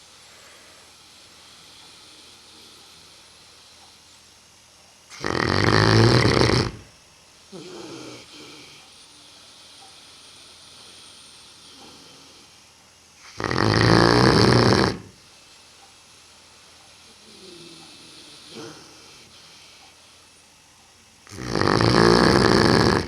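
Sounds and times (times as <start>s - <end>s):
dog snoring: 0.4s - 4.0s, 5.1s - 6.9s, 7.5s - 12.6s, 13.2s - 15.2s, 16.9s - 20.0s, 21.2s - 23.0s
dog breathing: 5.1s - 6.9s, 7.5s - 15.2s, 16.8s - 20.3s.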